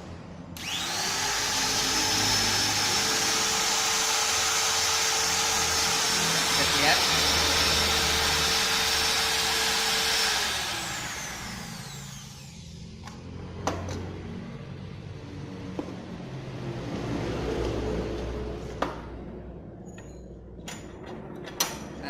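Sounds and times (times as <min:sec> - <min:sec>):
router motor whining: 0:00.6 - 0:13.4.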